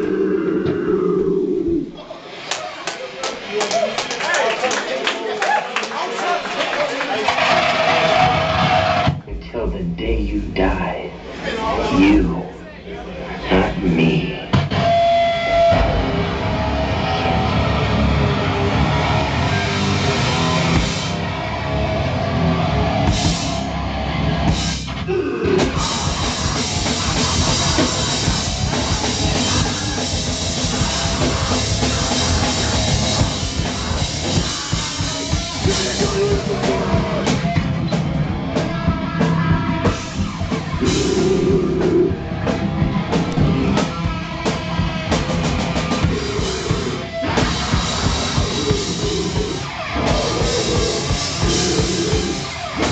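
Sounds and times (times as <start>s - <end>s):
live heavy rock band: 7.2s - 9.4s, 11.2s - 52.9s
drum kit pounding: 7.4s - 10.0s, 13.5s - 52.9s.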